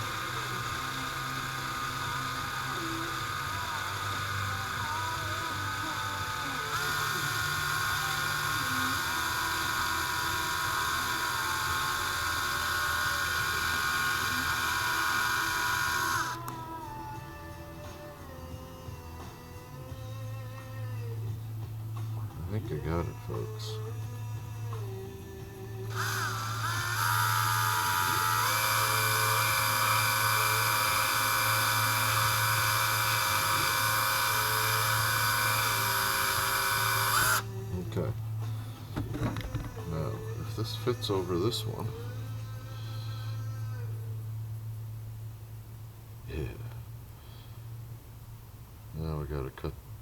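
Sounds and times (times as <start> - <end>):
power drill whining: 0.0 - 16.8, 25.8 - 43.9.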